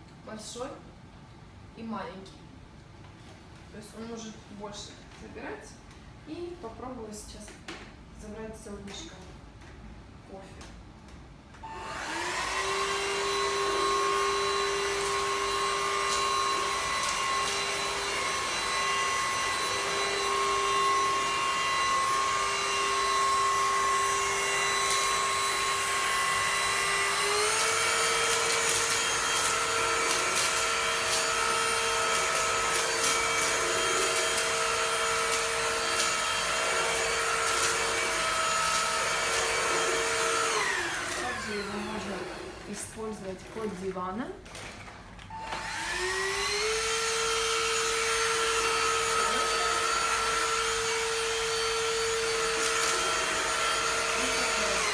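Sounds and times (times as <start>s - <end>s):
stick vacuum cleaner whine: 11.6s - 42.8s, 44.6s - 54.9s.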